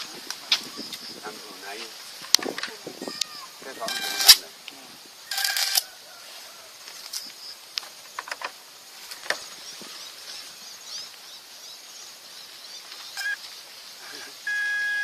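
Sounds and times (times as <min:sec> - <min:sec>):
faint high chirping: 0:09.3 - 0:15.0.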